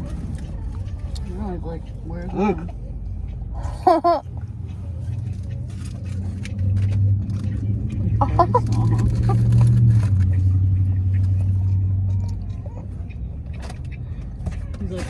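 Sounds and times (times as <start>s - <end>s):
car engine and road hum: 0.0s - 15.0s
high voice: 8.2s - 9.3s.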